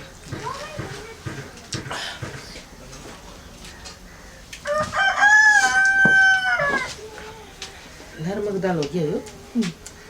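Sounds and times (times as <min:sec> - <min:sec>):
rooster crowing: 0:04.6 - 0:07.0.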